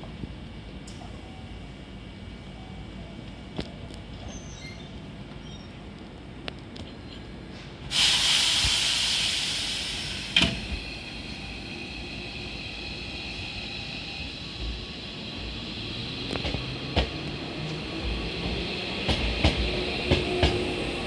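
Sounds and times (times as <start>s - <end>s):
train compressed air hiss: 7.9s - 13.2s.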